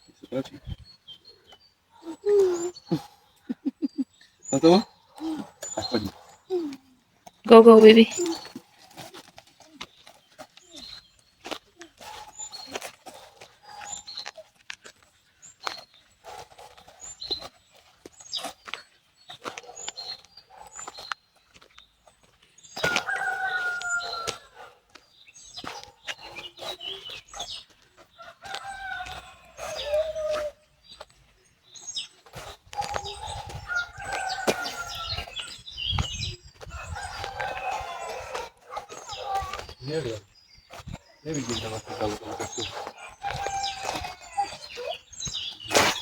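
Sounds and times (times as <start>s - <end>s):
small birds chirping: 0.0s - 46.0s
rooster crowing: 22.8s - 24.5s, 28.2s - 30.0s, 33.7s - 35.4s, 36.7s - 39.5s, 43.0s - 44.5s.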